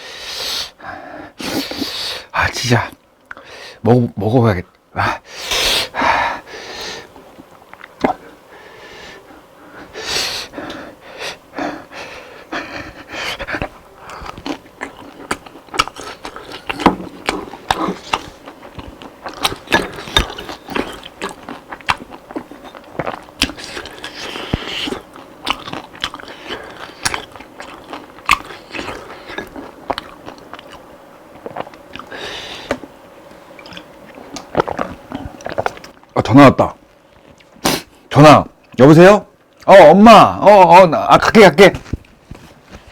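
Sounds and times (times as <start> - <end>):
chewing crispy fried chicken: 12.5 - 32.9, 33.6 - 36.2.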